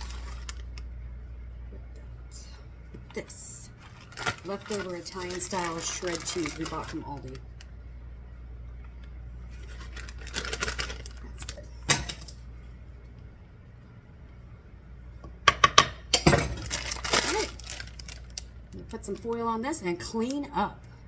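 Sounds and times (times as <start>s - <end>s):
packaging crinkling: 0.0s - 0.9s, 3.7s - 7.7s, 9.1s - 11.6s, 16.5s - 19.3s.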